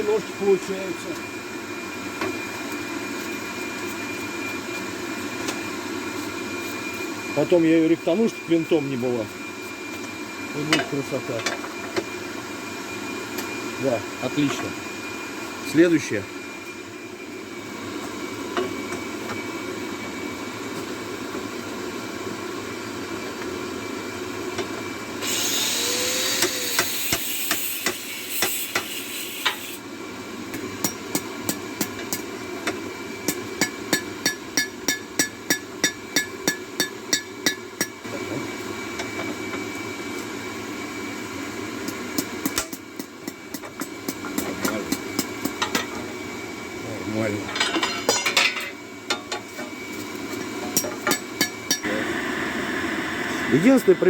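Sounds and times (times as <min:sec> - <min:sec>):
loud hiss: 0:25.2 - 0:29.8, 0:51.8 - 0:54.0
hammer striking steel on anvil: 0:33.3 - 0:37.9, 0:50.7 - 0:51.9
steady hum: 0:49.8 - 0:54.0.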